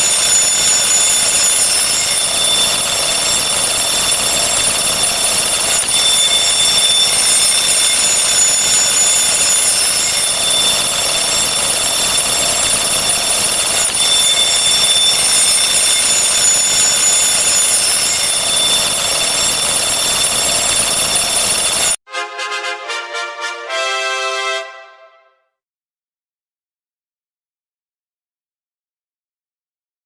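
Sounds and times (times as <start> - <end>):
overlapping electronic ringing tones: 0.0 - 22.0.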